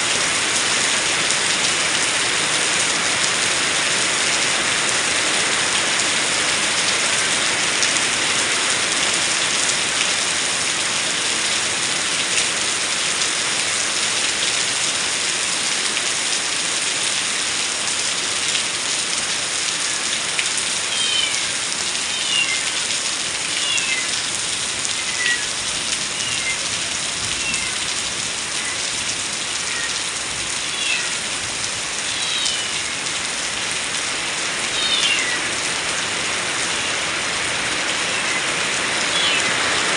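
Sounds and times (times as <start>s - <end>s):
heavy rain falling: 0.0s - 39.9s
short high falling calls: 29.6s - 31.3s, 32.0s - 33.0s, 34.7s - 35.6s.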